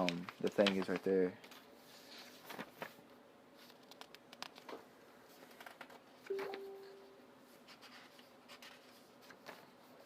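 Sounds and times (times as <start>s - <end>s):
short ringing tone: 6.3s - 7.2s.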